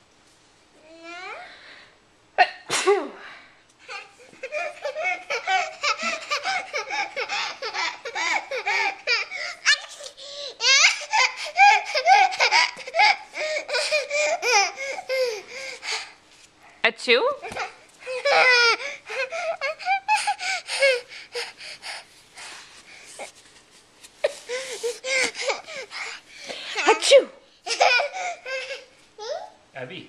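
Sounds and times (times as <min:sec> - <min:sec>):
sneeze: 0:02.4 - 0:03.2
baby belly laughing: 0:03.9 - 0:16.0, 0:17.4 - 0:21.5, 0:26.8 - 0:29.4.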